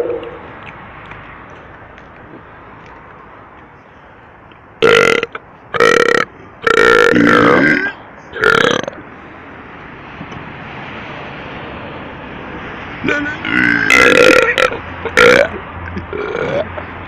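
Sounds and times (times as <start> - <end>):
person burping loudly: 4.8 - 9.0, 13.0 - 16.8.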